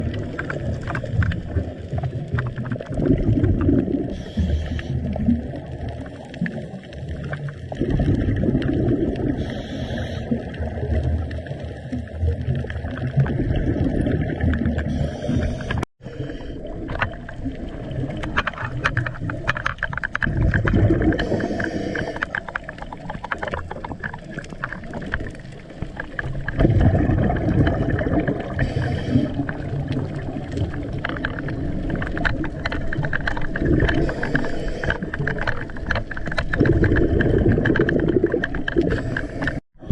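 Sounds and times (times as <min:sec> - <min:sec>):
exhaust bubbles gurgling: 0:00.0 - 0:39.9
small underwater crackles: 0:00.0 - 0:39.9
regulator inhale hiss: 0:04.1 - 0:05.0, 0:09.4 - 0:10.4, 0:14.9 - 0:16.7, 0:21.2 - 0:22.3, 0:28.6 - 0:29.5, 0:34.0 - 0:35.1, 0:38.9 - 0:39.6.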